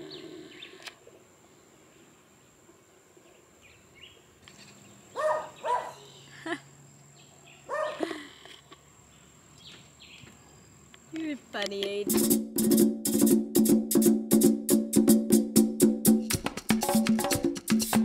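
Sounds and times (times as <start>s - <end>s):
dog barking: 5.2s - 6.1s, 7.7s - 8.0s.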